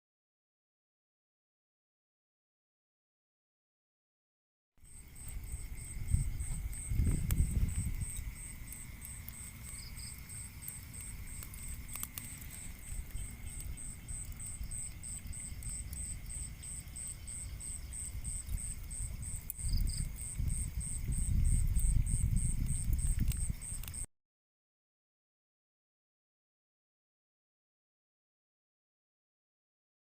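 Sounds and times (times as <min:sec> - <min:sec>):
insect chirping: 0:04.8 - 0:24.1
low rumbling microphone noise: 0:05.0 - 0:09.0, 0:09.6 - 0:23.7.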